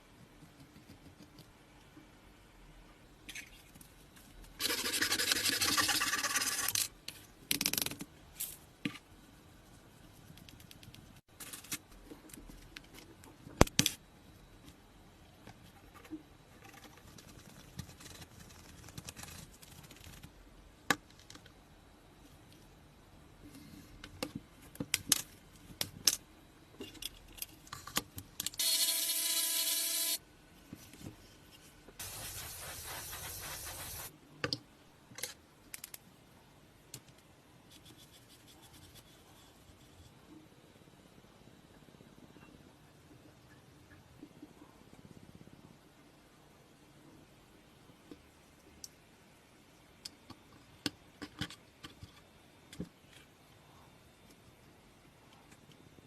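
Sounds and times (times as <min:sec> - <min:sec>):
rubbing and scraping: 0:32.0 - 0:34.1.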